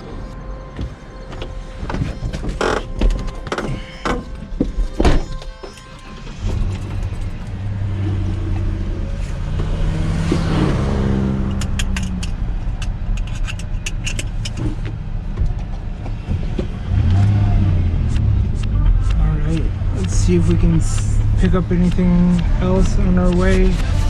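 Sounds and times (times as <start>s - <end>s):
truck engine accelerating: 5.8s - 24.0s
sharp clicks: 11.5s - 14.6s, 18.0s - 24.0s.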